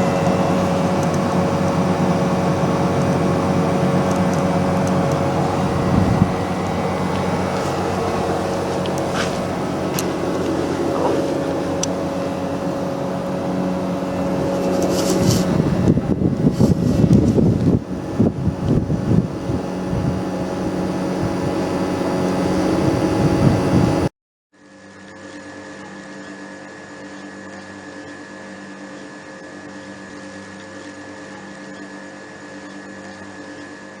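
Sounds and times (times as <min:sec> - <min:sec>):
air conditioner fan whirring: 0:00.0 - 0:24.1, 0:24.7 - 0:34.0
steady hum with held tones: 0:00.0 - 0:34.0
low rumble: 0:04.4 - 0:21.7.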